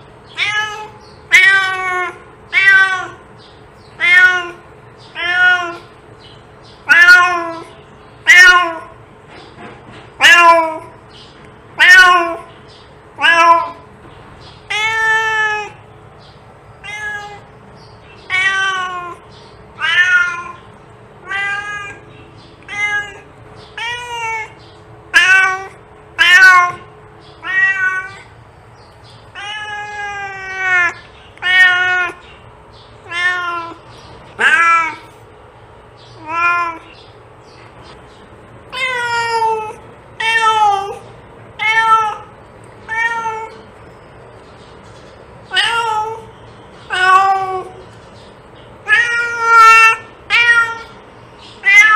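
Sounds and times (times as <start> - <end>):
cat meowing: 0.3 - 3.2, 3.9 - 5.9, 6.8 - 9.0, 10.2 - 11.0, 11.8 - 12.5, 13.2 - 13.9, 14.6 - 15.8, 16.8 - 17.5, 18.2 - 19.2, 19.8 - 28.3, 29.3 - 32.2, 33.0 - 35.1, 36.2 - 37.0, 38.7 - 43.7, 45.5 - 46.3, 46.9 - 47.8, 48.8 - 51.0, 51.6 - 51.9.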